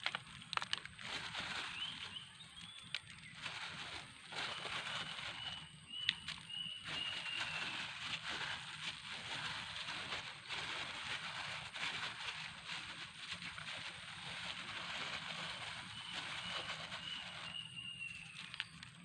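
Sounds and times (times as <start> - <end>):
steady outdoor hiss: 0.0 - 19.0.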